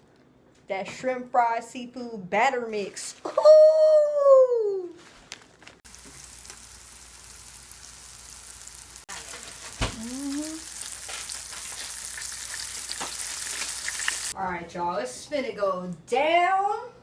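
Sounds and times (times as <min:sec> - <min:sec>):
food sizzling in hot oil: 0:05.8 - 0:14.4.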